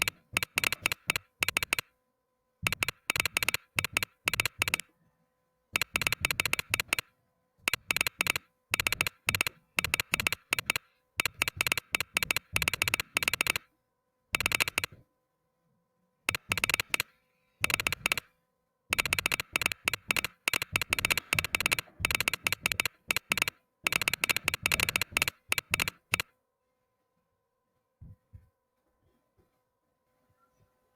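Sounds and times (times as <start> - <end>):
mechanical keyboard typing: 0.0 - 1.9, 2.6 - 4.9, 5.8 - 13.7, 14.4 - 15.0, 16.3 - 18.3, 18.9 - 26.3.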